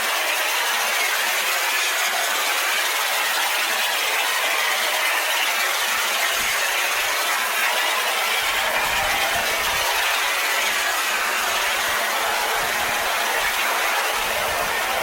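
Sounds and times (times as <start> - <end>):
pressure washer spraying metal: 4.9 - 15.0.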